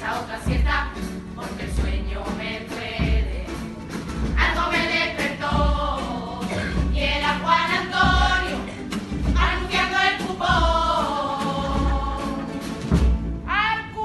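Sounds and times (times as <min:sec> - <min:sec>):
group singing in chorus: 0:00.0 - 0:13.3
low drum thumps: 0:05.4 - 0:12.2, 0:12.8 - 0:13.4.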